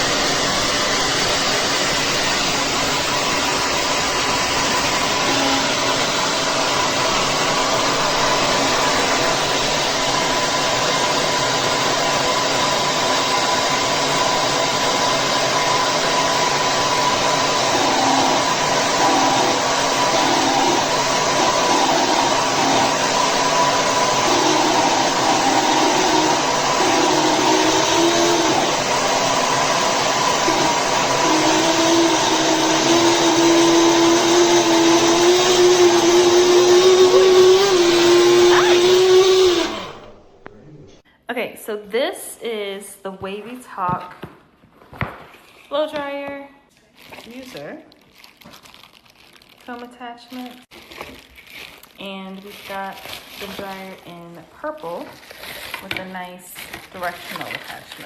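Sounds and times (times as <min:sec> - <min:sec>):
hair dryer blowing air: 0:00.0 - 0:40.5.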